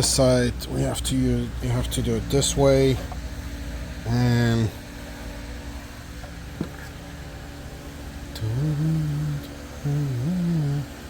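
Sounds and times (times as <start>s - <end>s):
steady low background hum: 0.0s - 11.0s
man humming: 8.3s - 11.0s.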